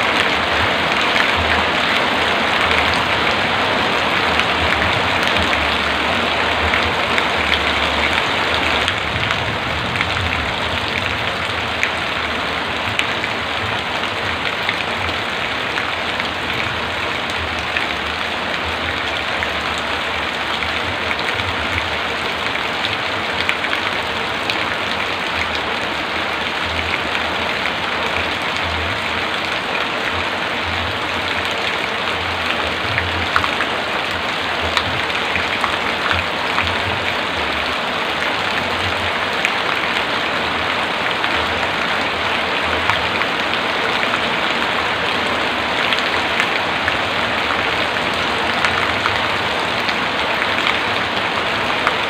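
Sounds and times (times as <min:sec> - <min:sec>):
heavy rain hissing: 0:00.0 - 0:52.0.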